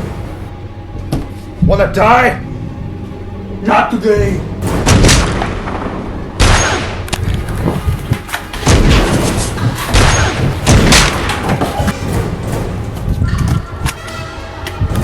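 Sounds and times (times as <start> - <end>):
loud gunshots with echo: 4.6 - 7.1, 8.6 - 13.0.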